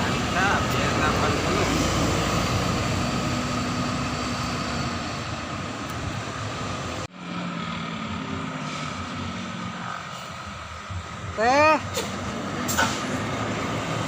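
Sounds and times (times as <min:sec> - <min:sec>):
bus engine and road noise: 0:00.0 - 0:14.0.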